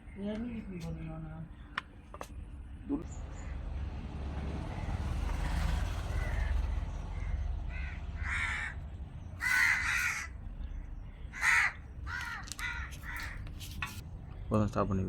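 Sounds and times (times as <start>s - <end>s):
crow cawing: 3.3s - 3.8s, 4.6s - 13.5s.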